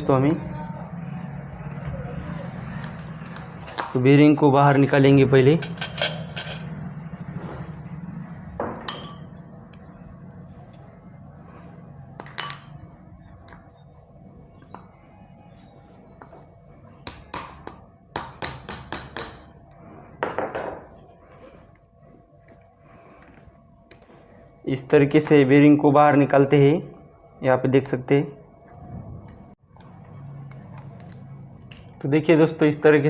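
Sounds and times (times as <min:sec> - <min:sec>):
metal tools clinking and tapping: 0:05.4 - 0:06.7, 0:08.8 - 0:09.8, 0:12.2 - 0:13.7.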